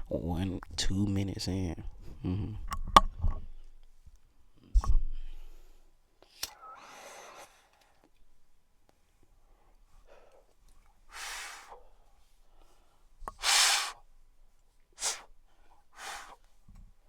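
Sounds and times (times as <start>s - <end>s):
man exhaling forcefully: 11.1s - 11.8s, 13.4s - 14.0s, 15.0s - 15.3s, 16.0s - 16.4s.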